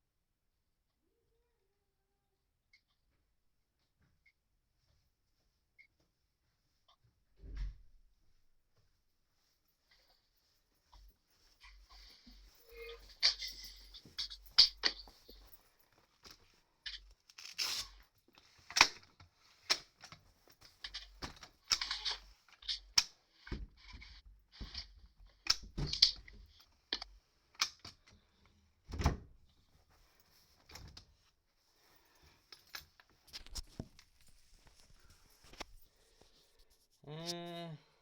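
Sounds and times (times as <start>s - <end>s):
knocks and clatters of handling: 10.8s - 31.3s.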